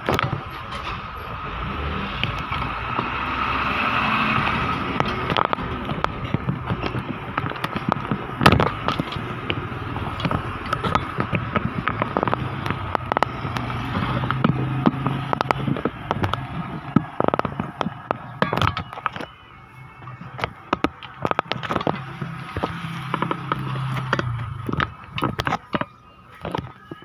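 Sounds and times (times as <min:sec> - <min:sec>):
clattering knocks and rattles: 0:00.0 - 0:19.4, 0:20.2 - 0:27.0
engine running at low revs: 0:00.7 - 0:18.3.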